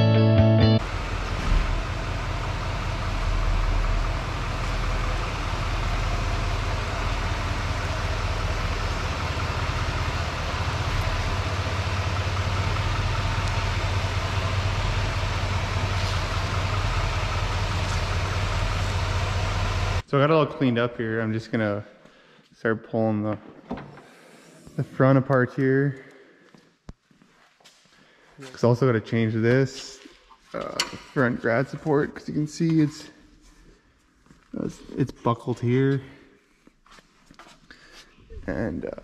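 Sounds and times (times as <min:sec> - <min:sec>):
skid steer engine running: 0:00.0 - 0:20.0.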